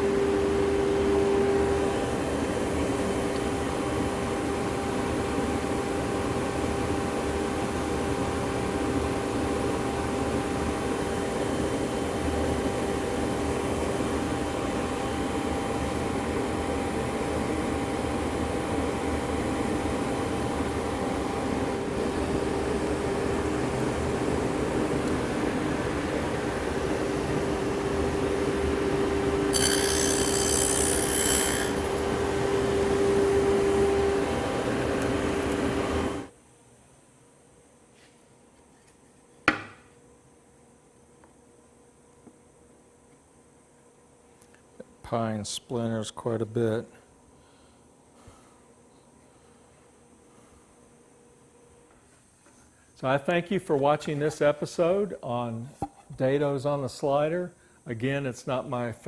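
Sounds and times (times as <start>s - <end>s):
table saw humming and whining: 0.0s - 36.3s
table saw motor humming: 19.7s - 36.3s
saw cutting wood high-pitched: 29.5s - 33.1s.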